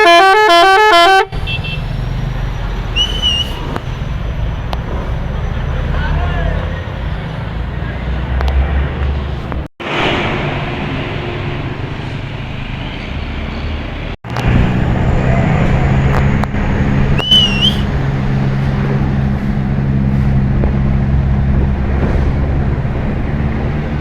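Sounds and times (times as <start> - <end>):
bus engine hum: 0.0 - 24.0
road noise: 0.0 - 24.0
short wavering whistle: 2.9 - 3.6, 17.2 - 17.9.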